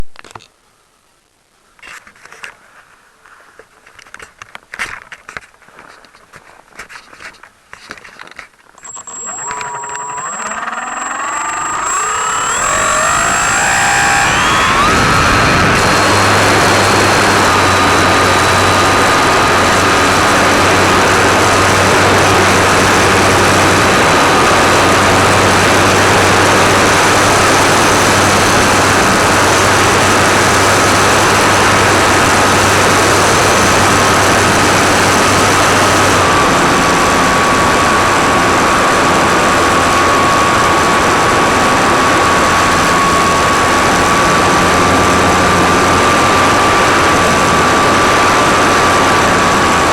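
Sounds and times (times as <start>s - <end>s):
electric motor and propeller whine: 8.8s - 49.9s.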